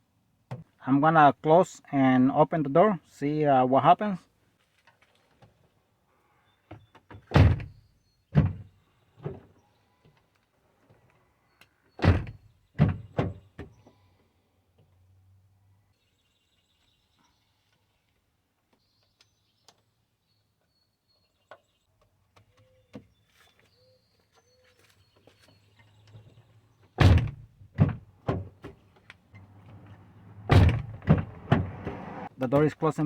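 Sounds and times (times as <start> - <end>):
car door thunking shut: 7.3 - 7.8, 27.0 - 28.6, 29.4 - 32.3.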